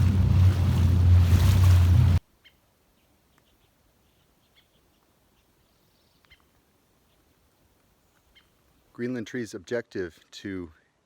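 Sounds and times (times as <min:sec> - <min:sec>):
songbirds chirping: 0:02.3 - 0:11.0.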